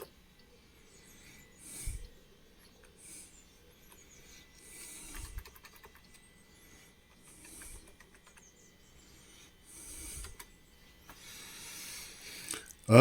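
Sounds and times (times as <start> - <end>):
keyboard keys clicking: 5.1 - 6.2.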